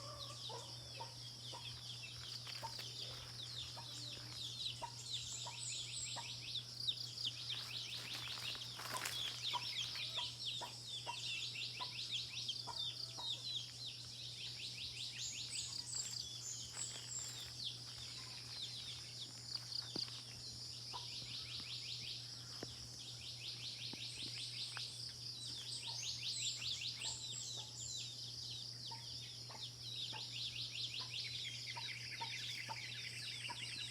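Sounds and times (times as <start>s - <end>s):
high-pitched chirping chorus: 0.0s - 22.3s.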